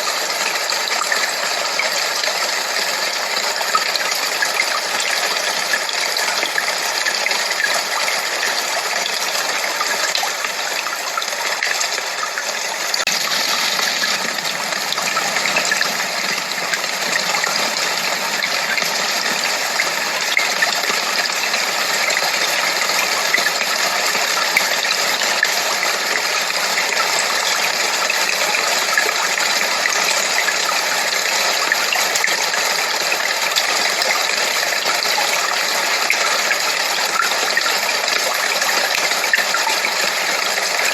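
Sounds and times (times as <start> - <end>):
gushing rushing noise: 12.7 - 28.4.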